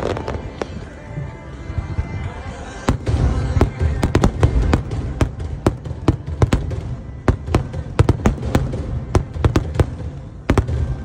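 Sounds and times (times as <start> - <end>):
fireworks bangs: 2.8 - 11.0.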